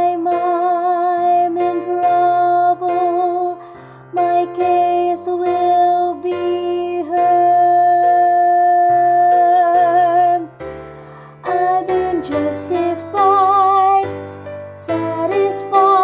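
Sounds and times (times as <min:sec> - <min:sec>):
woman singing with vibrato: 0:00.0 - 0:10.5, 0:11.4 - 0:14.1, 0:14.8 - 0:16.0
instrumental accompaniment: 0:08.9 - 0:16.0.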